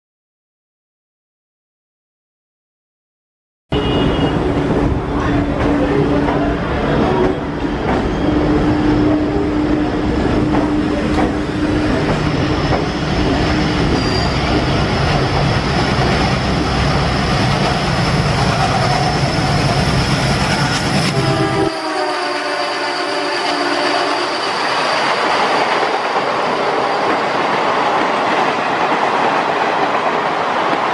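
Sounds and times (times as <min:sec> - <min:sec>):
train wheels rumbling and rattling: 0:04.4 - 0:30.9.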